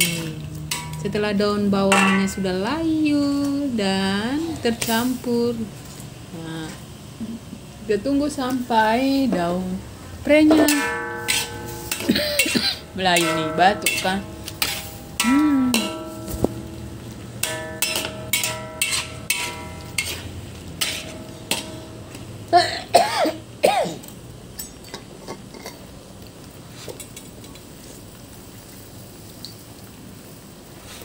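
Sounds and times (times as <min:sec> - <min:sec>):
metal spoon clinking on a pot: 0:00.0 - 0:01.3, 0:01.9 - 0:02.6, 0:10.5 - 0:16.8, 0:17.4 - 0:22.2, 0:24.5 - 0:25.9
person coughing: 0:12.0 - 0:12.8, 0:22.5 - 0:24.1.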